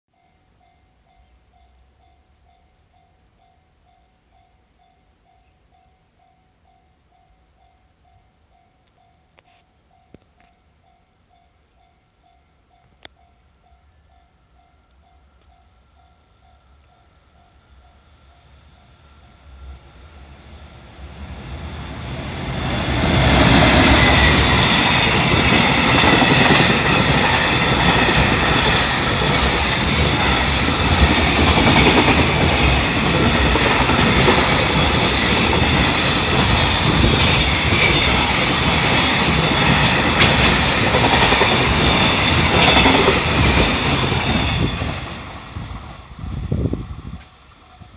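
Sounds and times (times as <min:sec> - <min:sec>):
freight train passing: 0:10.8 - 0:47.9.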